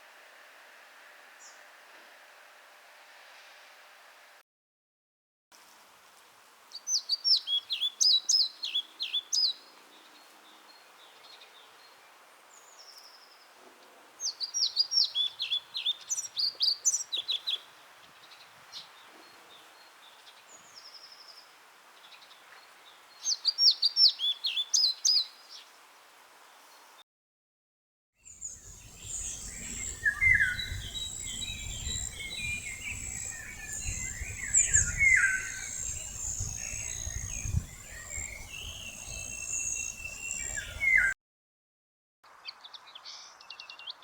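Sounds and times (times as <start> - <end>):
songbird singing: 6.7 - 13.6, 14.2 - 25.7, 28.2 - 41.2.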